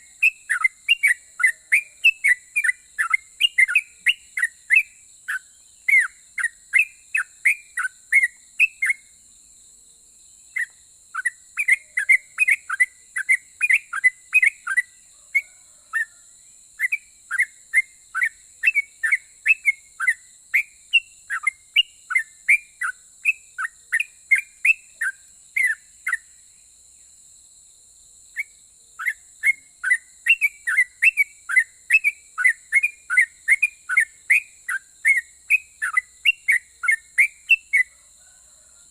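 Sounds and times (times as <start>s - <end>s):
faint high-pitched hiss: 0.0s - 38.9s.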